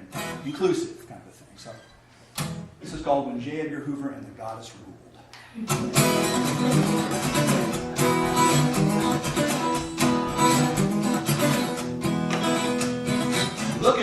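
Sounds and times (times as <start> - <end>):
acoustic guitar strumming: 0.0 - 0.6, 1.8 - 2.8, 5.7 - 14.0.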